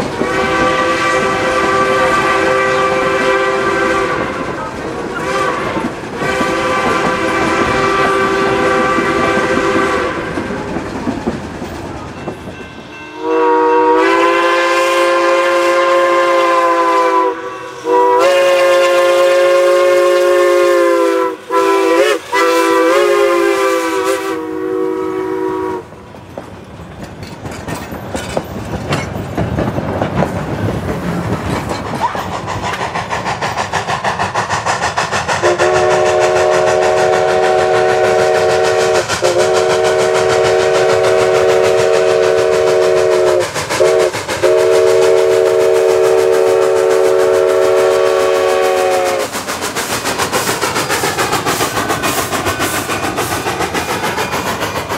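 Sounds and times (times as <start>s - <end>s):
train running noise: 0.0s - 54.9s
three-chime steam whistle: 0.2s - 4.3s, 5.2s - 10.4s, 12.2s - 25.9s, 35.4s - 49.4s
steam whistle blowing: 0.2s - 4.5s, 5.2s - 10.6s, 13.1s - 25.9s, 35.4s - 49.4s.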